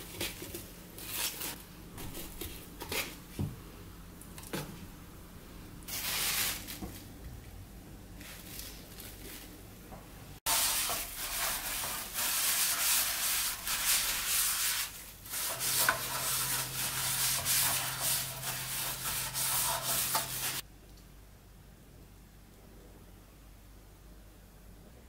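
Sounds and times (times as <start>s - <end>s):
scrubbing across a surface: 10.5s - 20.6s.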